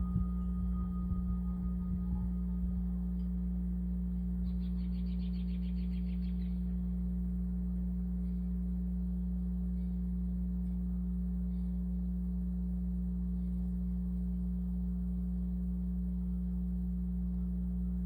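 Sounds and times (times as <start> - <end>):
steady low hum: 0.0 - 18.0
faint bird chirps: 4.3 - 7.0.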